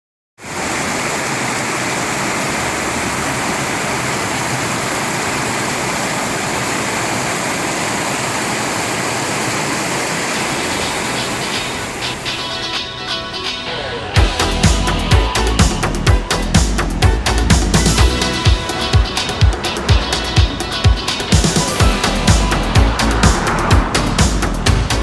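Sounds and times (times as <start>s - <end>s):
stream water rushing over rocks: 0.4s - 12.2s
music: 11.4s - 25.0s.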